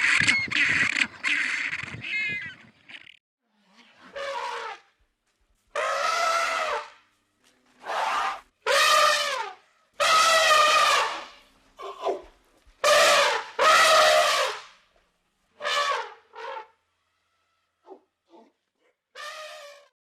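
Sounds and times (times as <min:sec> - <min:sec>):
pitched animal calls: 0:00.0 - 0:03.2.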